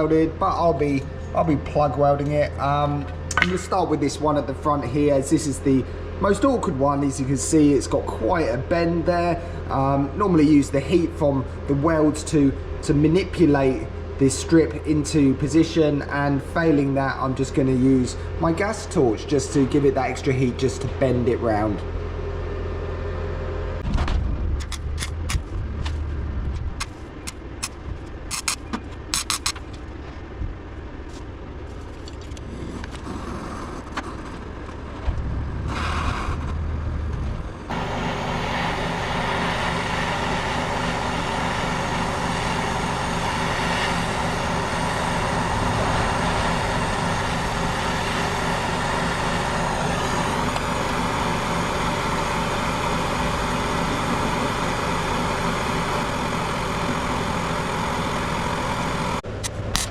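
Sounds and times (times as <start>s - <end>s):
low hum: 0.0s - 59.9s
welding crackles and clicks: 26.8s - 29.9s.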